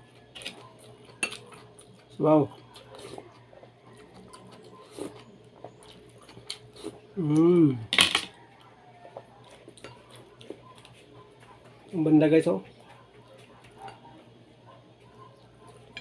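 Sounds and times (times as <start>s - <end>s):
person humming: 7.2s - 7.9s.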